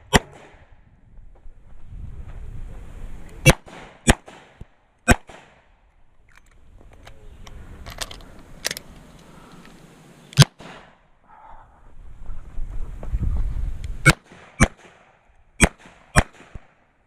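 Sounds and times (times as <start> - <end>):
revolver gunshots: 3.4 - 5.6, 14.0 - 16.8.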